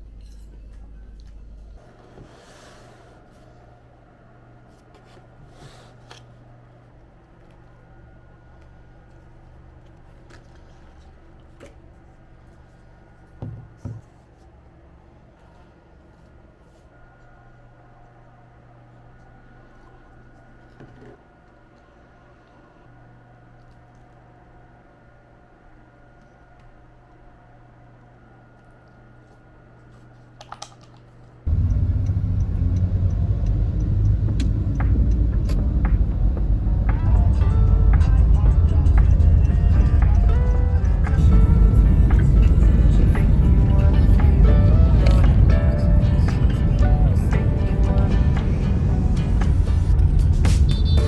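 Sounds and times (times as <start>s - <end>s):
steady low hum: 0.0s - 30.4s, 31.0s - 51.0s
loud steady low rumble: 31.5s - 51.0s.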